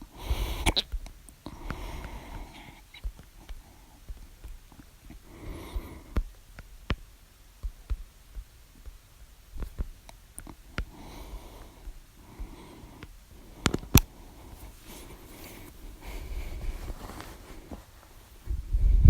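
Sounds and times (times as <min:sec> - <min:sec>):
person breathing: 0:00.0 - 0:06.4, 0:10.6 - 0:18.8
person hiccupping: 0:00.3 - 0:01.0.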